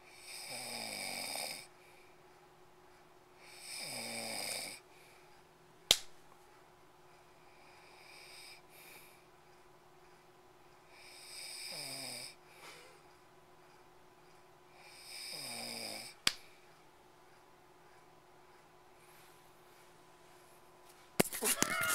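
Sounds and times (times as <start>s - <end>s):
man snoring: 0.1s - 1.7s, 3.4s - 4.8s, 10.9s - 12.4s, 14.8s - 16.2s
sharp smack: 5.9s - 6.1s.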